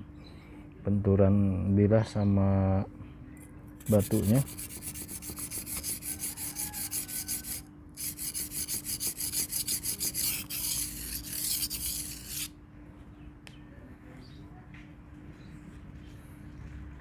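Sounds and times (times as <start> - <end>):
knife scraping on a whetstone: 3.8 - 12.5.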